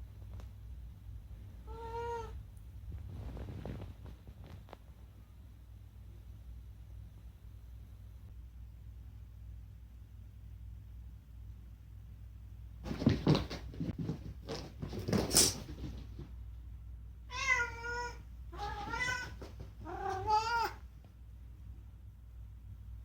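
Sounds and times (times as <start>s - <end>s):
cat meowing: 1.7s - 2.4s, 17.3s - 20.8s
rustling: 2.8s - 5.1s, 12.8s - 16.6s, 18.5s - 21.1s.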